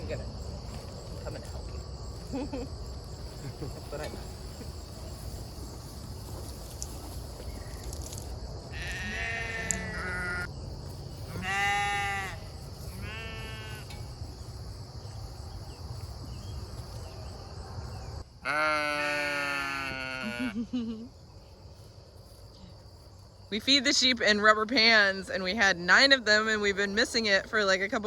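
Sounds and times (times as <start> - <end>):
sheep bleating: 8.7 - 10.5, 11.3 - 14.0, 18.4 - 20.6.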